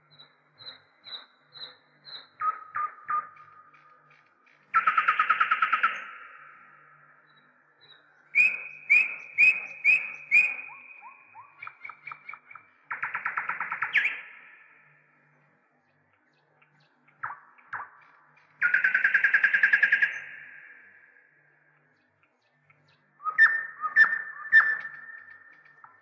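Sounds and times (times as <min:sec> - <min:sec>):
bird chirping and trilling: 0:00.1 - 0:03.4, 0:04.7 - 0:06.6, 0:08.4 - 0:14.6, 0:18.6 - 0:20.8, 0:23.2 - 0:26.0.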